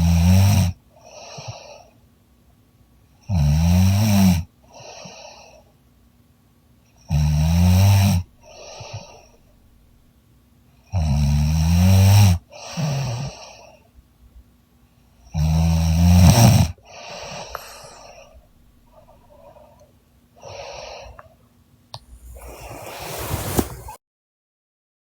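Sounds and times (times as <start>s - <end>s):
quiet breaths: 0.0s - 2.1s, 4.6s - 5.9s, 6.8s - 10.1s, 10.8s - 23.9s
woman snoring: 7.1s - 9.4s, 11.0s - 13.7s, 15.4s - 19.8s, 22.1s - 23.9s.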